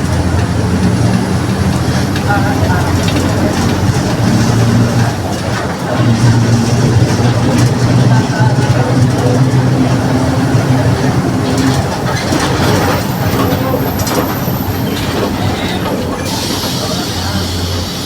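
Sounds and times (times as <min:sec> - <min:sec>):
bus diesel engine humming: 0:00.0 - 0:18.0
hiss: 0:16.3 - 0:18.0.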